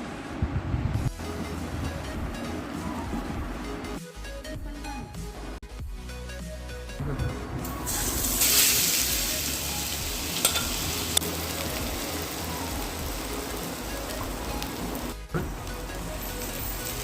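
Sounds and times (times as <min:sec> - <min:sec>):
food sizzling in hot oil: 0:07.8 - 0:15.2.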